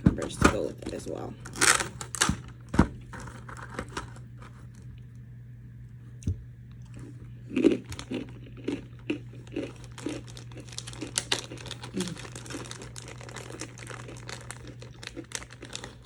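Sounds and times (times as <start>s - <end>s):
person chewing crunchy snack: 6.8s - 16.0s.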